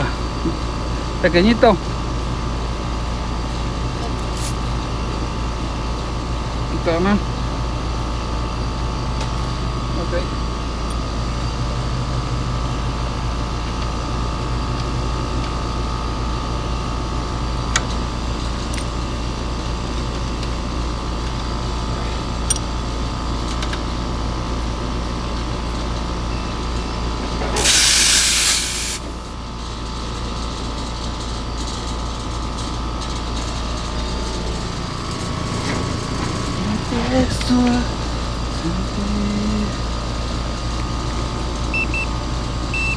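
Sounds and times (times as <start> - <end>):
loud hiss burst: 27.6 - 29.2
machinery hum: 32.4 - 42.9.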